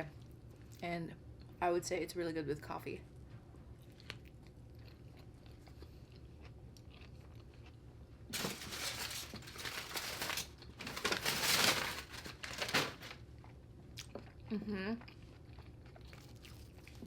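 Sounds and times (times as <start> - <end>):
loud crunching and chewing of food: 3.7 - 8.5, 9.4 - 10.8, 13.2 - 17.0.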